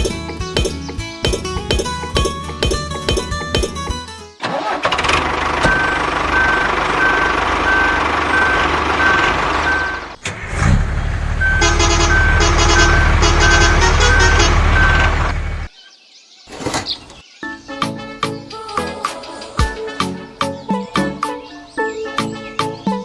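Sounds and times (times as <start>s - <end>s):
truck engine running: 4.4s - 15.7s
reversing alarm beeping: 5.7s - 10.2s, 11.4s - 15.4s.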